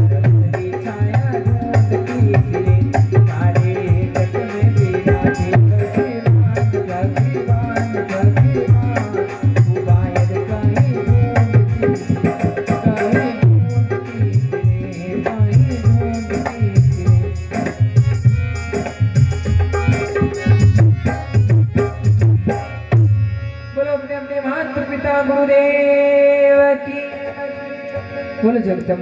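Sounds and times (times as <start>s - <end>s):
fast hand-drum strokes: 0.0s - 23.1s
held melodic tones: 0.6s - 23.7s.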